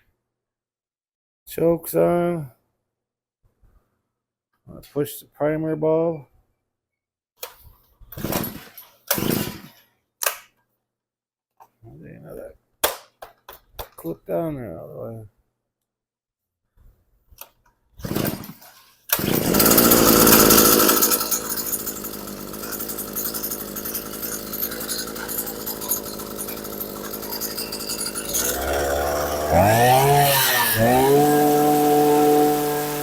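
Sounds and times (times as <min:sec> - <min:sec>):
rope pull starter: 0:18.0 - 0:33.0
two-stroke engine running: 0:19.2 - 0:33.0.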